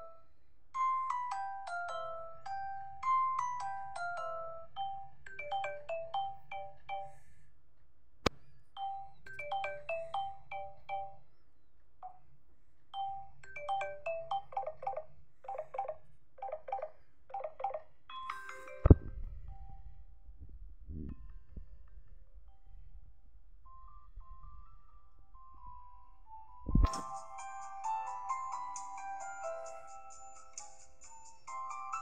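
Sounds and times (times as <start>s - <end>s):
mallet-like ringtone melody: 0.8s - 7.2s, 8.8s - 11.2s, 13.0s - 20.0s, 25.5s - 32.0s.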